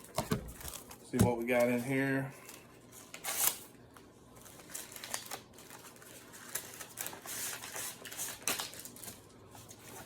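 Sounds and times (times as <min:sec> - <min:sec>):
card packaging clicks and rustling: 0:04.4 - 0:10.0.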